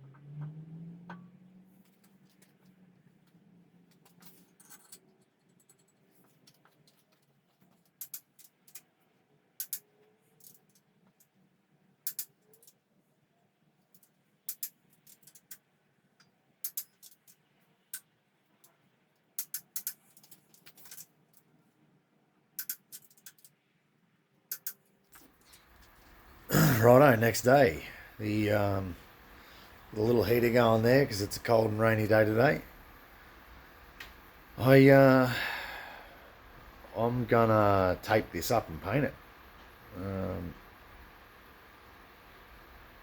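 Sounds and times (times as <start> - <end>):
metallic clicks of hand tools: 7.9 - 8.9, 9.6 - 11.3, 12.0 - 12.8, 13.9 - 18.1, 19.4 - 21.4, 22.6 - 23.6, 24.5 - 25.6.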